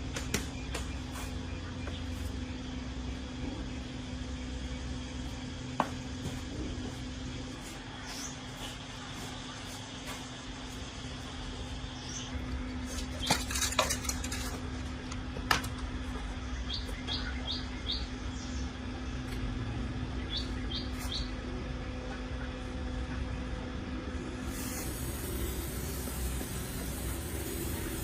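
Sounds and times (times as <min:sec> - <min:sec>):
steady hiss: 0:24.2 - 0:28.0.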